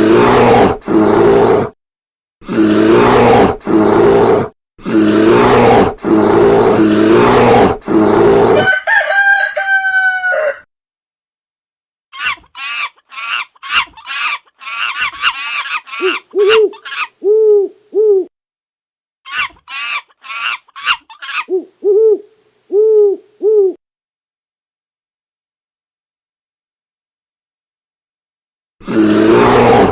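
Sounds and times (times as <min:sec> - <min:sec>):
loud animal roar: 0:00.0 - 0:01.8, 0:02.4 - 0:10.6, 0:28.8 - 0:29.9
rooster crowing: 0:08.6 - 0:10.7
hen clucking: 0:12.2 - 0:17.1.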